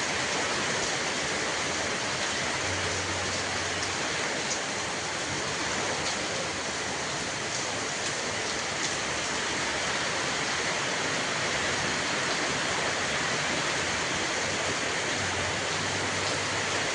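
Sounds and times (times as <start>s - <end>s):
heavy rain: 0.0s - 16.9s.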